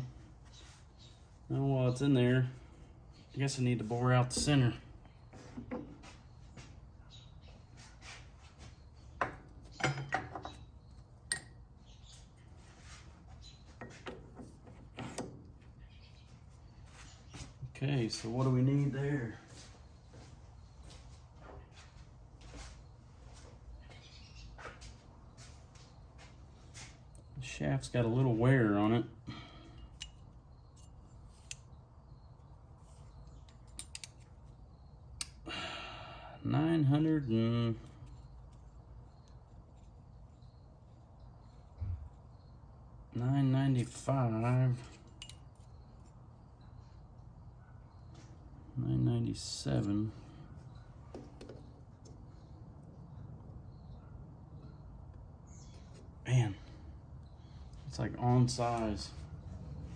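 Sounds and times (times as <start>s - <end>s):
faint low hum: 0.0s - 59.9s
metal tools clanking: 9.2s - 11.6s, 43.7s - 46.2s.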